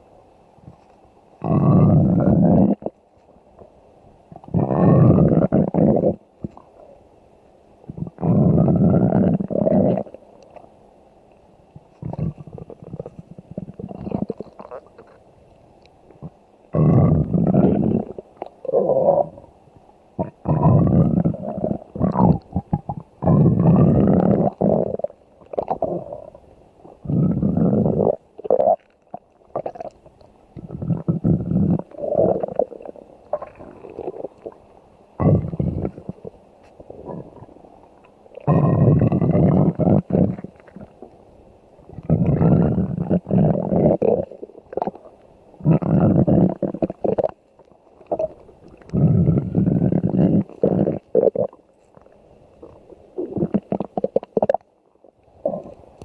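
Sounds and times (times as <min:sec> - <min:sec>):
cartoon stomach growling: 0:01.4 - 0:03.0, 0:04.4 - 0:06.6, 0:07.9 - 0:10.2, 0:12.0 - 0:15.2, 0:16.2 - 0:19.5, 0:20.2 - 0:26.4, 0:27.0 - 0:30.0, 0:30.6 - 0:34.6, 0:35.2 - 0:36.3, 0:38.4 - 0:40.9, 0:41.9 - 0:45.0, 0:45.6 - 0:47.4, 0:48.1 - 0:51.6, 0:53.2 - 0:54.6, 0:55.4 - 0:55.8.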